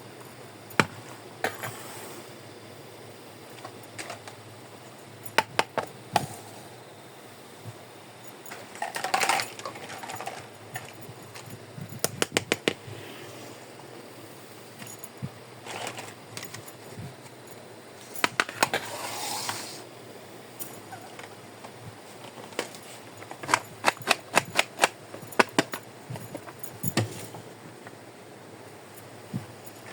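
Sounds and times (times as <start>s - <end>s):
plastic toy pieces clattering: 8.5s - 11.5s, 15.6s - 16.7s, 22.3s - 26.7s.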